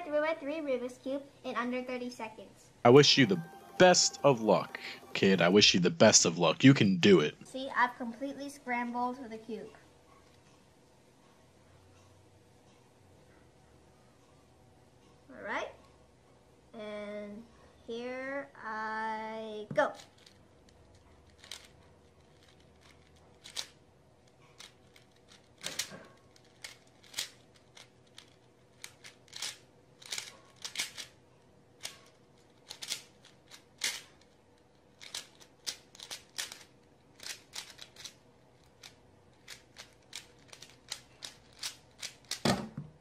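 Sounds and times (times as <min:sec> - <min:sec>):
puzzle cube layers clicking: 0:22.4 - 0:23.7, 0:24.6 - 0:31.1, 0:35.0 - 0:38.1.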